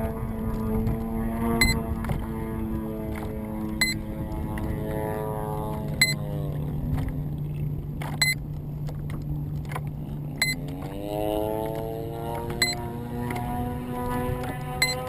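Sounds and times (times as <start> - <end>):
model aircraft motor humming: 0.0 - 15.0
short sharp beep: 10.4 - 10.6, 14.8 - 15.0.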